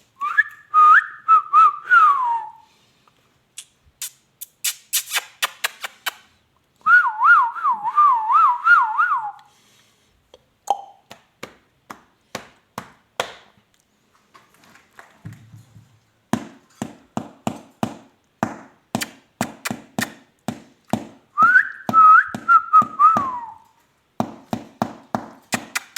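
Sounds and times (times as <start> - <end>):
clear whistling: 0.2 - 2.7, 6.8 - 9.5, 21.4 - 23.8
wavering whistle: 0.2 - 2.7, 6.9 - 9.5, 21.4 - 23.7.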